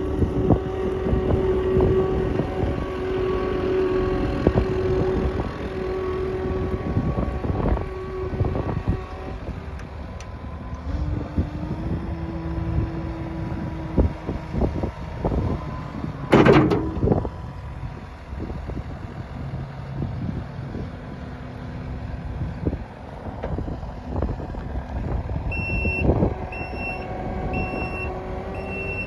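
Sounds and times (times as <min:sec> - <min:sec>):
steady whine: 0:00.0 - 0:10.9
diesel engine running: 0:00.0 - 0:29.0
wind buffeting microphone: 0:00.0 - 0:29.0
loud clank: 0:16.3 - 0:17.2
thumps: 0:16.3 - 0:17.2.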